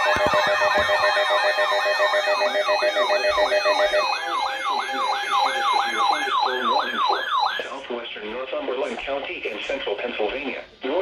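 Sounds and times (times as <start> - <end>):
siren yelping: 0.0 - 7.7.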